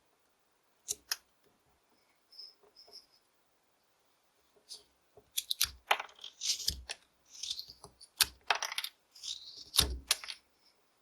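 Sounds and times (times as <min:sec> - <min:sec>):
knife scraping wood: 0:05.4 - 0:08.3, 0:09.2 - 0:10.0.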